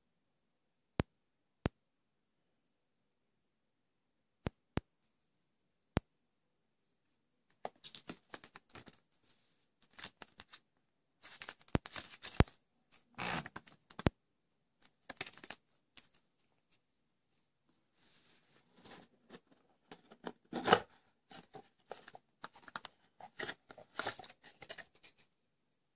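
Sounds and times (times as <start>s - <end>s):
box and wrapping rustling: 18.2s - 25.3s.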